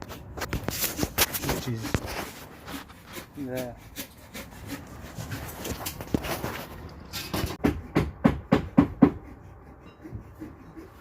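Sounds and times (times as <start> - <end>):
rustling and scraping: 0.0 - 7.6
sharp knocks: 7.3 - 9.3.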